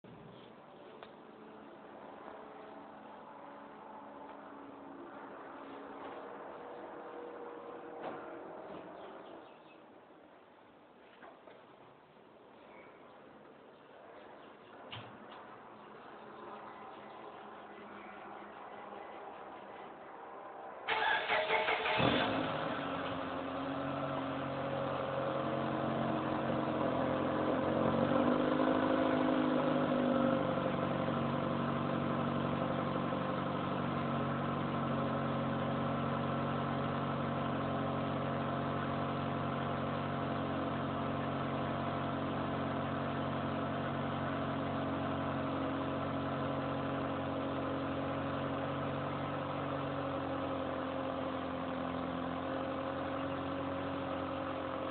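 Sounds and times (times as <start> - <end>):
car engine idling: 15.8 - 54.9.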